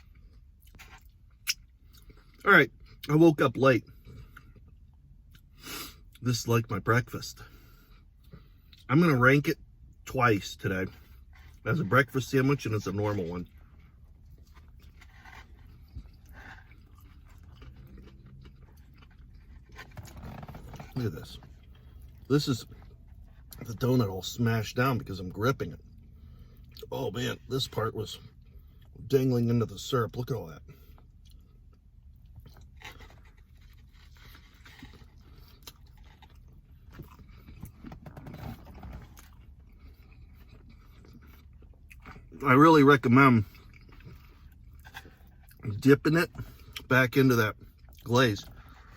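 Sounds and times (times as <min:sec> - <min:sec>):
man chewing: 0:00.0 - 0:03.1, 0:11.0 - 0:23.7, 0:30.8 - 0:42.4, 0:43.4 - 0:46.9
low steady hum: 0:00.0 - 0:48.9
soft rustles and scrapes: 0:11.0 - 0:17.8, 0:18.7 - 0:23.8, 0:32.6 - 0:40.3.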